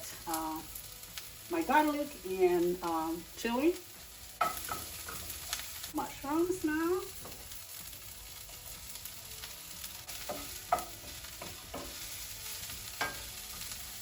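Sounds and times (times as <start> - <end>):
vegetables sizzling in oil: 0.0 - 14.0
utensil knocking against pan: 10.3 - 12.0.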